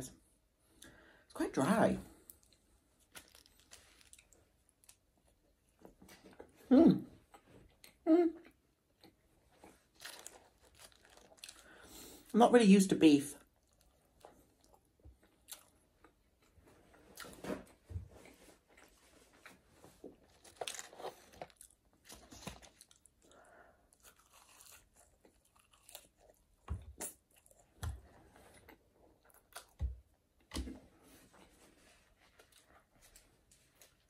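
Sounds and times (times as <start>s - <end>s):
chewing and biting food: 2.3s - 6.5s, 7.3s - 11.8s, 13.5s - 30.8s.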